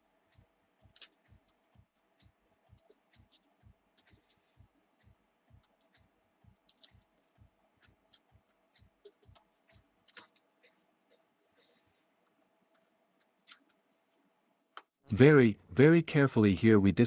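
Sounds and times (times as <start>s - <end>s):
clicking of plastic laptop parts: 6.6s - 10.5s.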